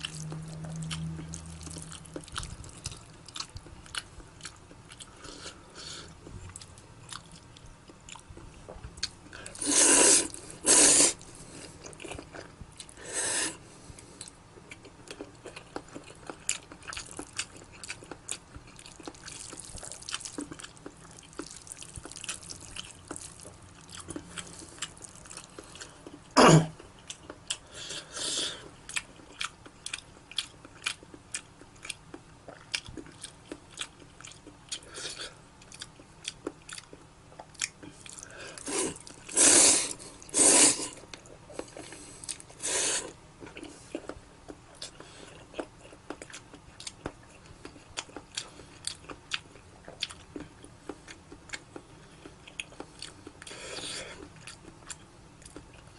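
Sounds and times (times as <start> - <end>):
wet noodles squelching: 18.8 - 25.9.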